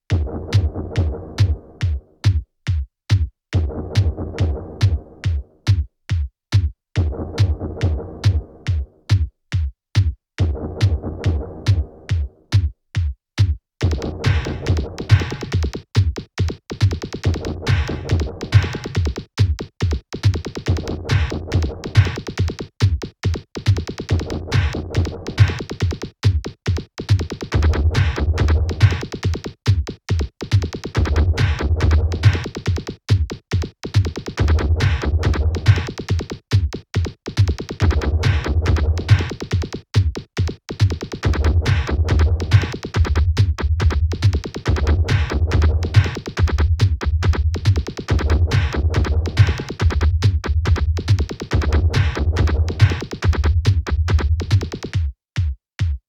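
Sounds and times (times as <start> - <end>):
drum machine beat: 0.0 - 56.0
deep bass part: 41.3 - 54.4.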